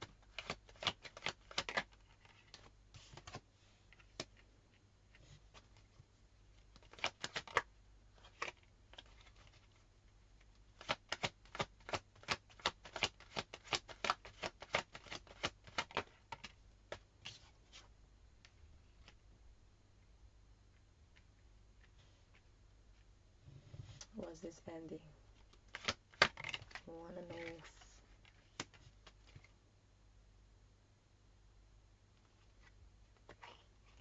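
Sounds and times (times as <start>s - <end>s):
cards being shuffled: 0.0s - 4.4s, 6.6s - 9.8s, 10.8s - 17.9s, 25.4s - 29.5s.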